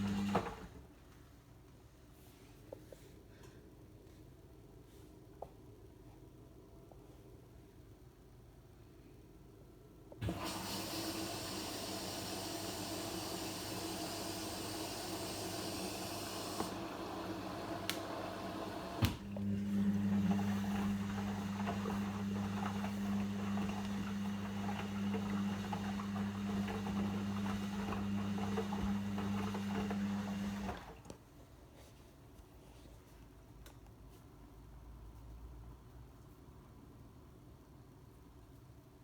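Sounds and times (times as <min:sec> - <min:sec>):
washing machine low hum: 0:00.0 - 0:00.9, 0:10.2 - 0:31.1
washing machine hiss: 0:10.2 - 0:24.6.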